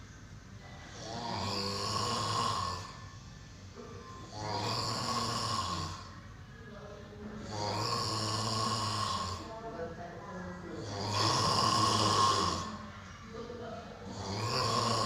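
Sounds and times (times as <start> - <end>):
quiet breathing: 0.0 - 15.0
person snoring heavily: 0.9 - 3.0, 4.2 - 6.1, 7.4 - 9.5, 10.8 - 12.8, 14.0 - 15.0.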